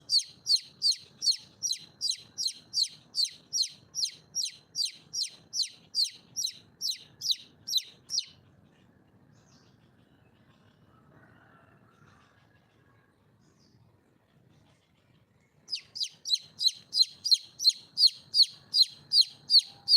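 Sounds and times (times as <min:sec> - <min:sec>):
hen calling: 0:00.0 - 0:08.4, 0:15.7 - 0:19.9.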